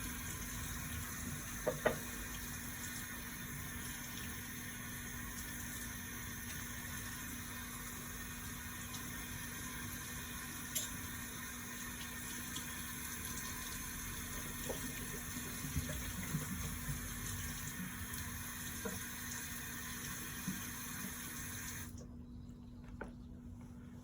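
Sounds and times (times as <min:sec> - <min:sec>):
water running from a tap: 0:00.0 - 0:22.0
constant low hum: 0:21.8 - 0:24.0.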